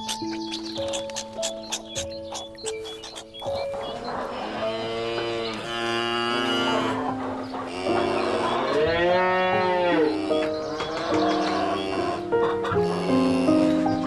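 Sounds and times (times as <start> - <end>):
background music: 0.0 - 14.0
cattle mooing: 4.0 - 13.8.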